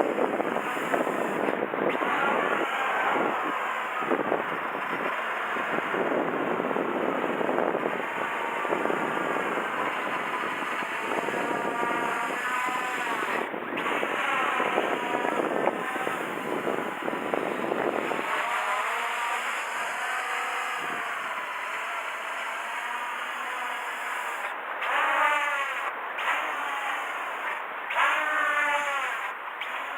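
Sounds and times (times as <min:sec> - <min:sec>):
wind buffeting microphone: 0:00.0 - 0:21.9
model aircraft motors whining: 0:00.0 - 0:29.9.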